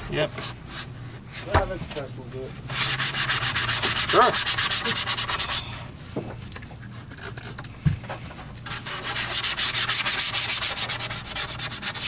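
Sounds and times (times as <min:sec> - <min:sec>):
hand scrubbing back and forth: 0:02.7 - 0:05.8, 0:08.7 - 0:12.0.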